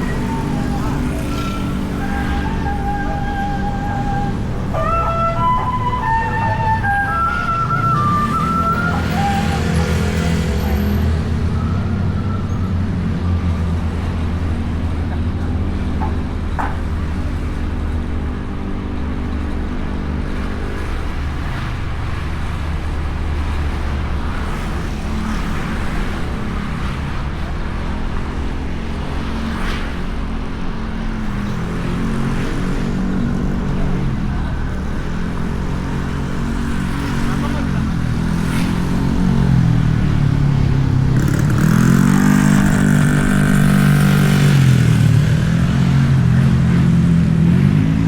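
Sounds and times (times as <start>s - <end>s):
road noise: 0.0s - 48.0s.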